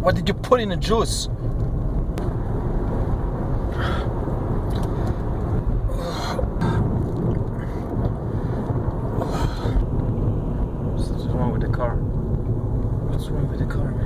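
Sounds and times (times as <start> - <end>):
car rumbling: 0.0 - 14.0.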